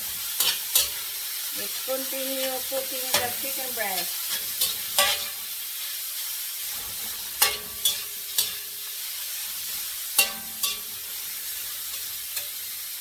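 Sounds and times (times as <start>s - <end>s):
chicken sizzling in hot oil: 0.0s - 13.0s
spatula clinking against pan: 0.4s - 1.0s, 4.3s - 5.4s, 7.4s - 8.7s, 10.2s - 11.0s, 11.9s - 12.6s.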